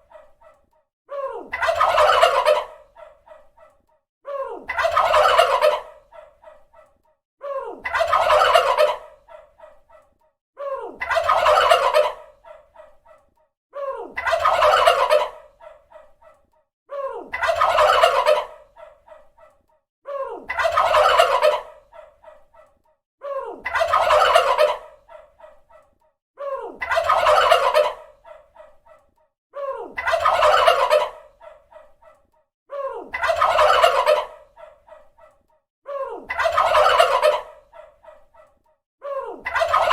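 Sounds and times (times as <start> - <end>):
turkey gobbling: 1.5 - 3.4, 4.7 - 6.6, 7.9 - 9.5, 11.0 - 12.8, 14.2 - 15.8, 17.3 - 19.0, 20.5 - 22.2, 23.6 - 25.2, 26.8 - 28.4, 30.0 - 31.6, 33.1 - 34.8, 36.3 - 38.0, 39.4 - 39.9.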